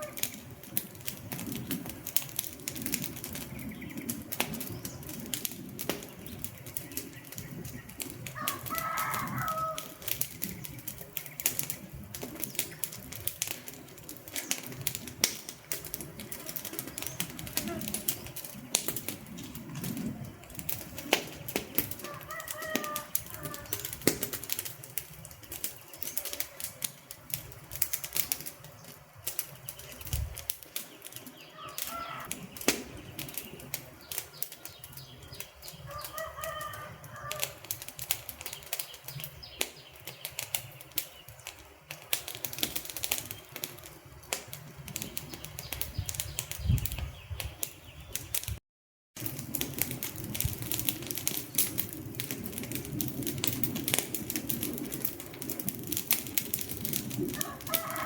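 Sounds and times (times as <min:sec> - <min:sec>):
wood fire crackling: 0:00.0 - 0:48.6, 0:49.2 - 0:58.0
short bird calls: 0:31.5 - 0:33.5.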